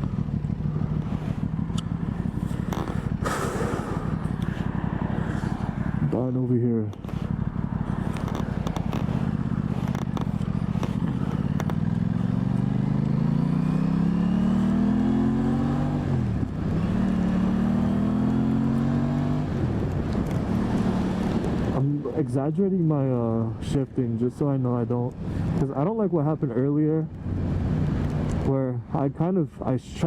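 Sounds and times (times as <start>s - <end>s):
motorcycle engine accelerating: 0.0s - 22.2s.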